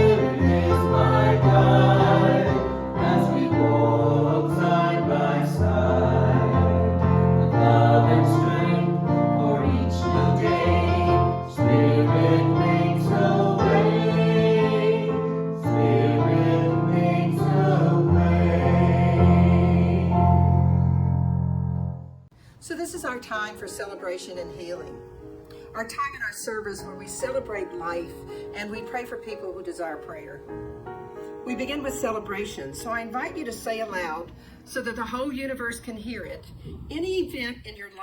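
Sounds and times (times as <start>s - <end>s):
group singing gospel song: 0.0s - 20.5s.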